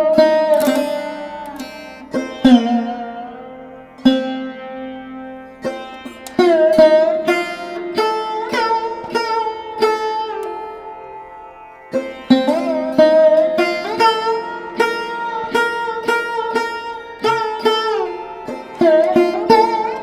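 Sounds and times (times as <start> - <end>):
plucked string melody: 0.0 - 20.0.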